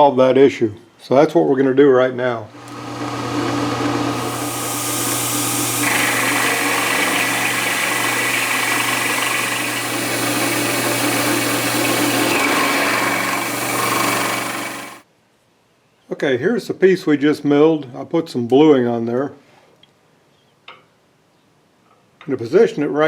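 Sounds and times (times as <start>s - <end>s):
milling machine cutting metal: 2.5s - 15.0s.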